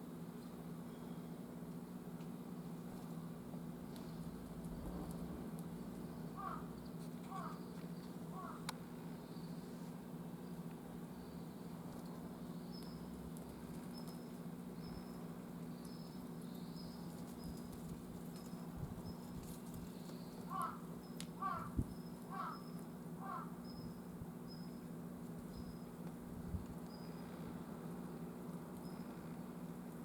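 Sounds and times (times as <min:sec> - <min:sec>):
steady low hum: 0:00.0 - 0:30.0
crow cawing: 0:06.4 - 0:07.6, 0:08.3 - 0:08.7, 0:20.5 - 0:23.6.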